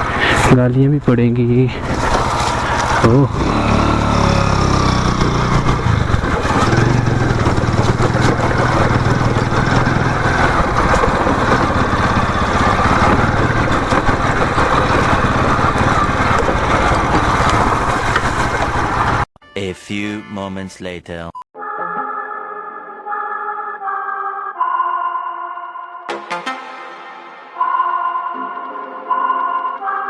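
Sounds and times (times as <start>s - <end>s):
motorcycle engine running: 1.8s - 19.3s.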